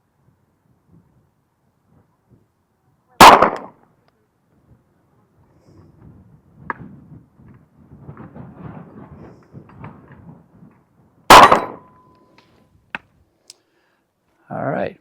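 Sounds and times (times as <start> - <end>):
pistol shot: 3.2 - 3.8, 11.3 - 11.8
wind buffeting microphone: 4.6 - 11.9.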